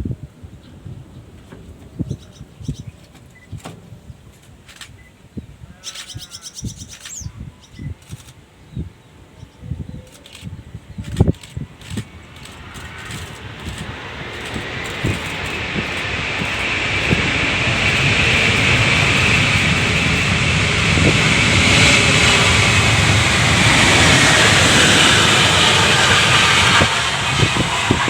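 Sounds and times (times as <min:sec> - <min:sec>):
jet engines landing: 0:10.0 - 0:28.0.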